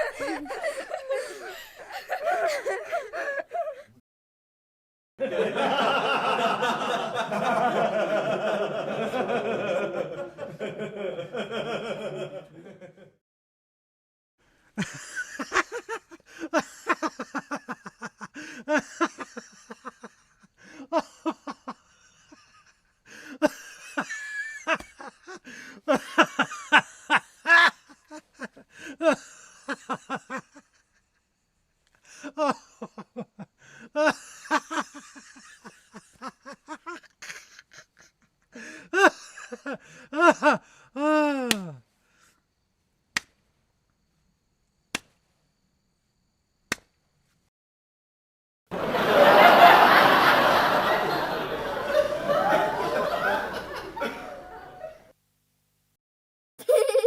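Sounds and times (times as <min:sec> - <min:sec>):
person laughing hard: 0:00.0 - 0:04.0, 0:14.8 - 0:22.5, 0:33.8 - 0:41.8, 0:56.6 - 0:57.0.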